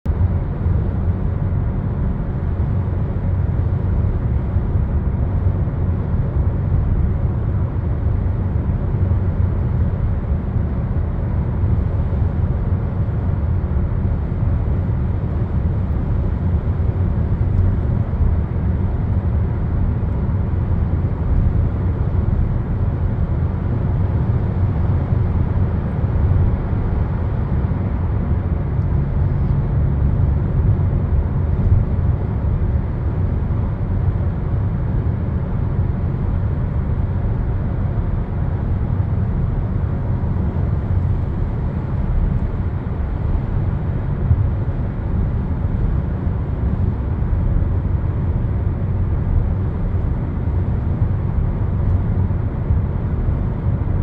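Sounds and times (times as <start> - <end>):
vehicle rumble: 0.1 - 54.0.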